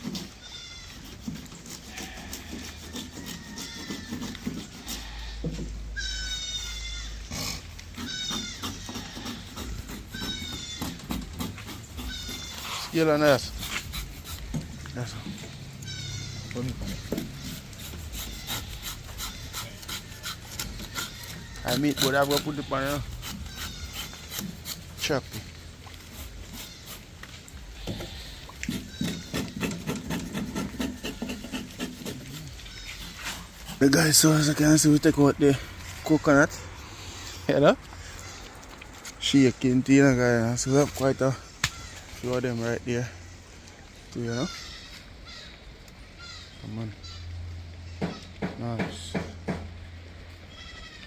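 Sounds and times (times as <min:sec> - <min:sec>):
animal high-pitched cries: 0:00.1 - 0:05.4, 0:06.0 - 0:14.4, 0:15.4 - 0:24.8, 0:27.8 - 0:35.0.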